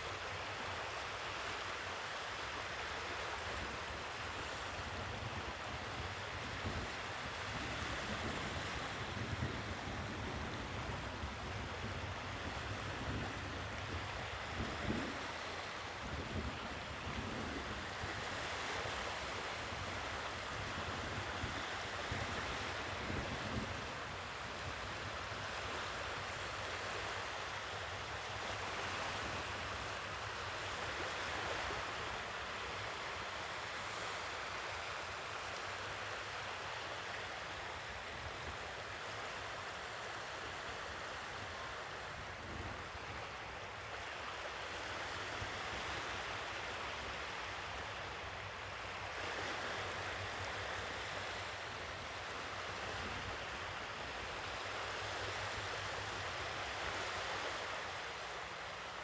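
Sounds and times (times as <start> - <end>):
sea waves washing on shore: 0.0 - 59.0.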